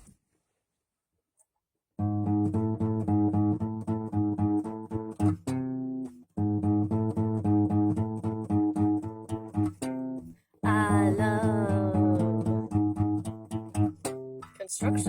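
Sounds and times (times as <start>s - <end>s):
guitar strumming chords: 2.0s - 15.0s.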